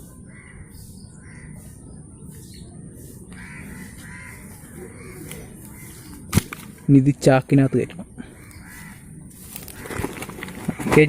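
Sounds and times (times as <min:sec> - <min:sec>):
crows cawing: 0:00.2 - 0:01.8, 0:03.3 - 0:06.3, 0:07.4 - 0:11.0.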